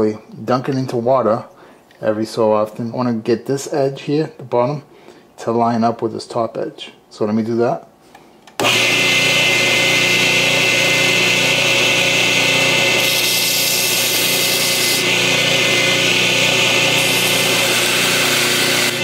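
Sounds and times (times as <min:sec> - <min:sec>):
belt grinder motor whine: 0:08.6 - 0:19.0.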